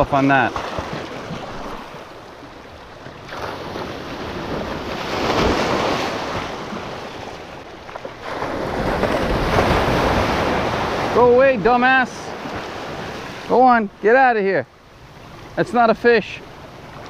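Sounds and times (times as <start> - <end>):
surf washing onto rocks: 3.1 - 14.4.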